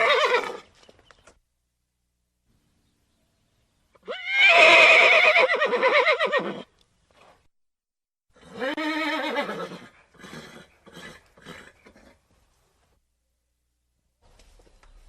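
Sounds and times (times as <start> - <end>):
horse neighing: 4.0 - 6.7, 8.4 - 12.2.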